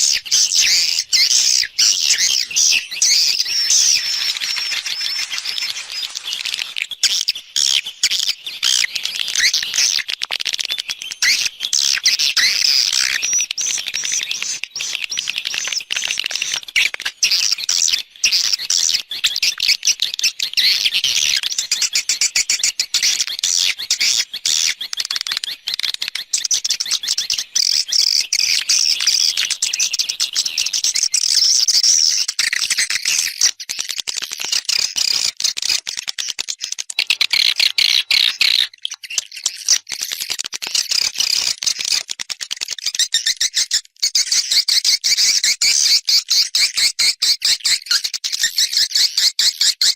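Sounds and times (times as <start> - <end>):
swiftlet twittering: 2.8 - 6.8.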